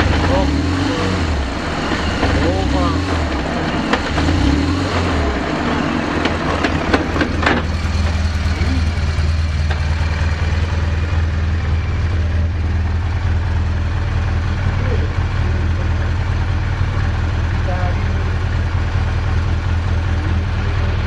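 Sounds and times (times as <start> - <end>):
motorcycle engine idling: 0.0 - 21.0.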